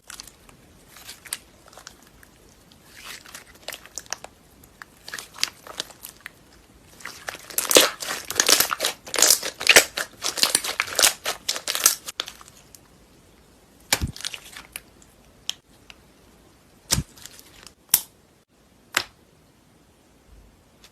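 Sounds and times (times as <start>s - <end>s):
slime crackling and popping: 0.0s - 12.5s.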